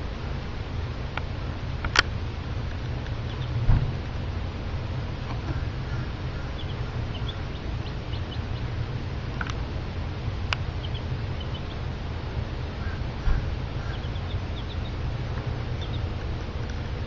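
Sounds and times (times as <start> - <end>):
steady low hum: 0.0 - 17.0
chick peeping: 3.2 - 3.7, 5.3 - 9.6, 10.4 - 12.0, 12.6 - 16.8.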